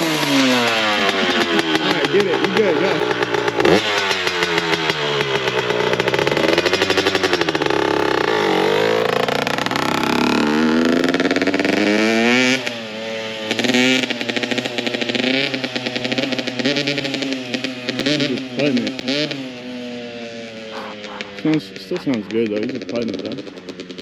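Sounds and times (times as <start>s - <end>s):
dirt bike engine revving: 0.0s - 24.0s.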